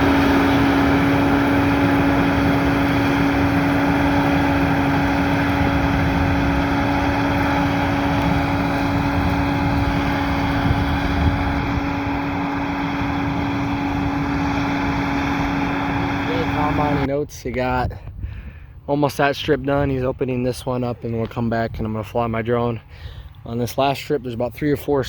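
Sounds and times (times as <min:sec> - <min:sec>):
machine humming: 0:00.0 - 0:17.1.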